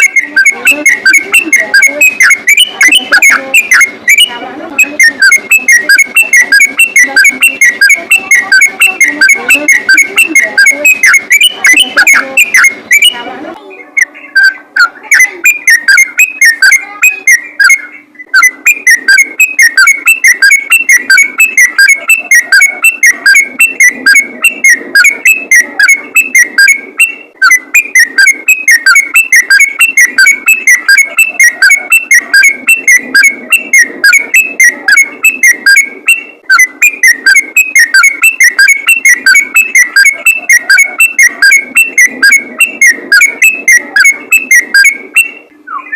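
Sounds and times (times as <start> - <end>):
bird singing rapid whistled notes: 14.0 - 45.9.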